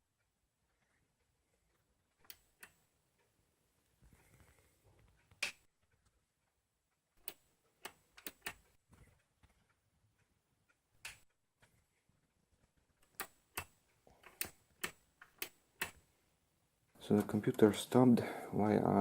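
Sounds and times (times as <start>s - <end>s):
sharp clicks: 7.2s - 8.8s, 11.0s - 11.4s, 13.0s - 16.0s.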